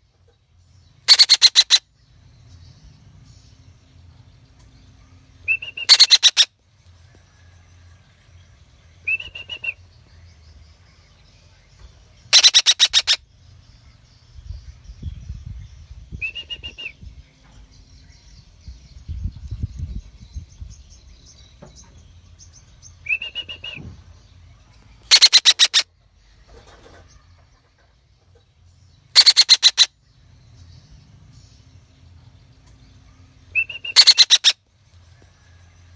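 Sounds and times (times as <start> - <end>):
parakeet calling: 1.1 - 1.8, 5.5 - 6.5, 12.3 - 13.2, 25.1 - 25.9, 29.1 - 30.0, 33.6 - 34.6
low rumbling noise: 13.2 - 25.2.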